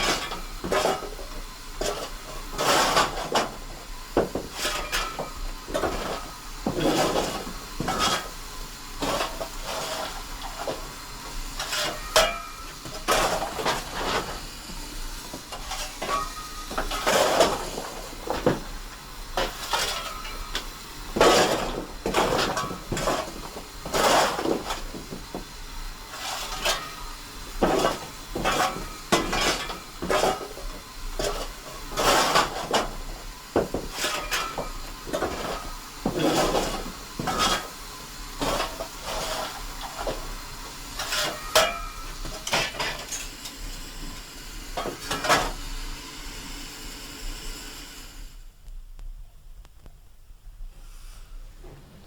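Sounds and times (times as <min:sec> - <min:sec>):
railway couplings clanking: 0:15.2 - 0:18.8.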